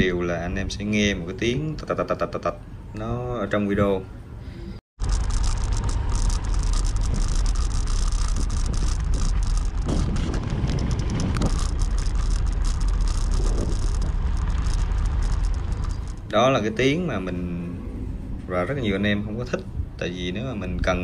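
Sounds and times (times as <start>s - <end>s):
road and wind rumble: 0.0s - 21.0s
small irregular clicks: 5.0s - 16.4s.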